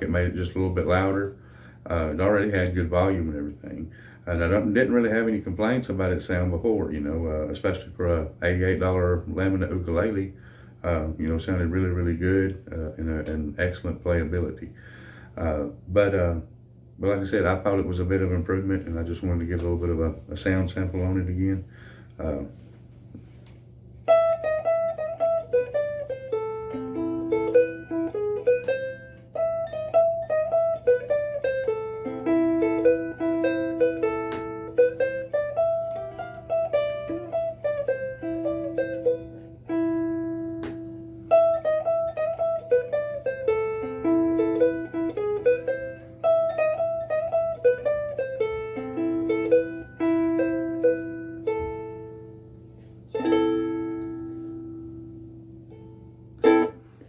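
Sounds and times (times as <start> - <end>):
faint low hum: 0.0 - 57.0
ukulele plucked melody: 24.0 - 57.0.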